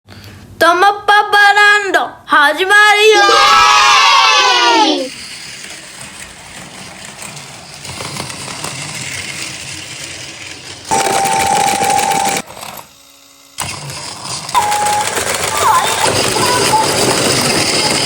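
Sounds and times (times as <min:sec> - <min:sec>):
toy train motor whirring: 0:04.2 - 0:18.0
steady high tone: 0:10.9 - 0:12.4.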